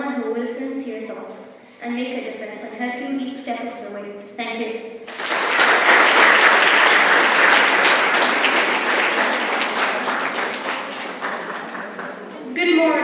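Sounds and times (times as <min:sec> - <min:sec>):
audience applauding: 0:05.1 - 0:13.0.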